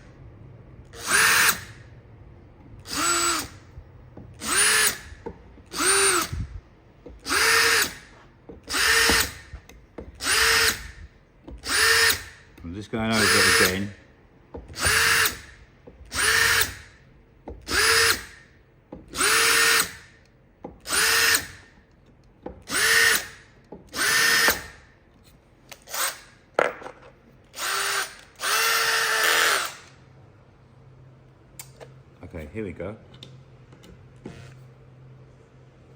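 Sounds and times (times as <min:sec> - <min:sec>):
cordless drill whining: 0:00.9 - 0:01.8, 0:02.8 - 0:13.9, 0:14.7 - 0:16.9, 0:17.7 - 0:18.4, 0:19.1 - 0:20.1, 0:20.8 - 0:21.7, 0:22.7 - 0:24.8, 0:27.5 - 0:29.9.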